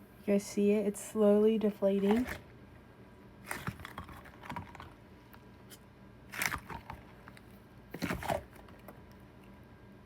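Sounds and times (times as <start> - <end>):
foam toy squishing: 1.8 - 2.6, 3.4 - 9.1.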